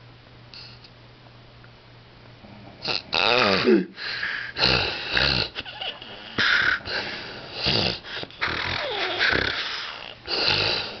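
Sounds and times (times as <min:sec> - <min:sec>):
man snoring: 0:02.4 - 0:03.9, 0:04.5 - 0:05.6, 0:06.6 - 0:11.0.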